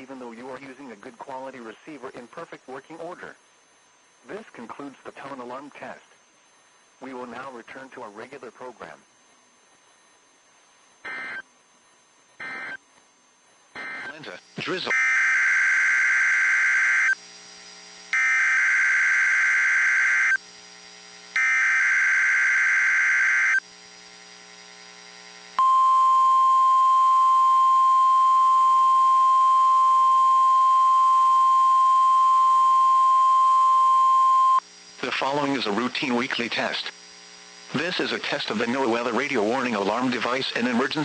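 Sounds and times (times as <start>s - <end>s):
buzzy data bursts: 11.0s - 11.4s, 12.4s - 12.8s, 13.7s - 25.6s
steady warning alarm tone: 11.0s - 11.4s, 12.4s - 12.8s, 13.8s - 17.3s, 18.1s - 20.4s, 21.3s - 23.6s.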